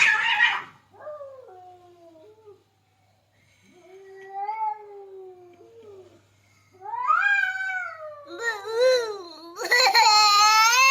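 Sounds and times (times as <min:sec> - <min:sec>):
cat yowling: 0:00.0 - 0:00.8.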